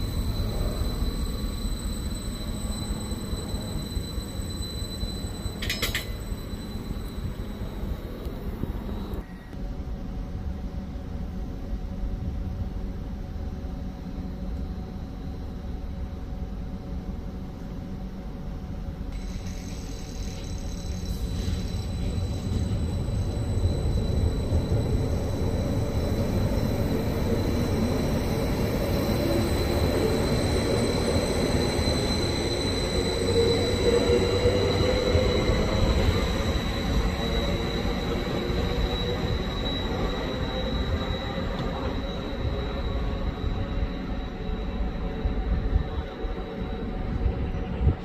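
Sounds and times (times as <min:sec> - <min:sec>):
high-pitched wheel squeal: 0:00.0 - 0:08.0, 0:19.2 - 0:46.8
train rumbling on rails: 0:00.0 - 0:48.0.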